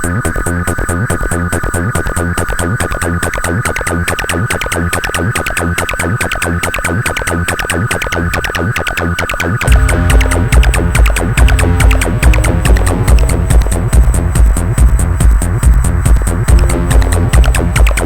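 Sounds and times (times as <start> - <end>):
fast hi-hat pattern: 0.0 - 18.0
heavy bass and kick: 9.6 - 18.0
high synth tone: 9.7 - 14.7.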